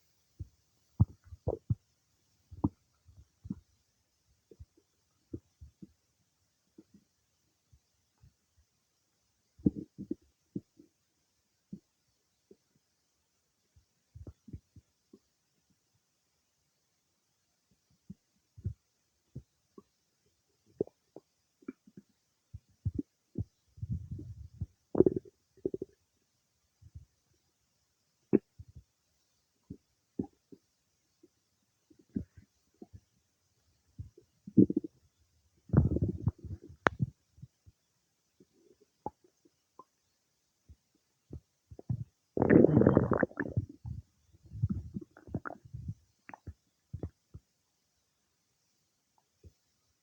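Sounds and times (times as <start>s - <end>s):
low stomach rumble: 1.0s - 1.9s, 2.5s - 3.8s, 9.6s - 11.0s, 14.1s - 15.3s, 18.1s - 19.9s, 20.6s - 26.0s, 29.6s - 30.6s, 31.9s - 33.1s, 33.9s - 37.8s, 40.7s - 47.5s
stomach gurgling: 1.0s - 3.8s, 4.4s - 6.1s, 6.7s - 7.2s, 9.6s - 11.1s, 14.1s - 15.4s, 18.1s - 26.1s, 28.3s - 29.0s, 29.6s - 33.1s, 33.9s - 37.8s, 38.4s - 40.0s, 40.7s - 47.5s.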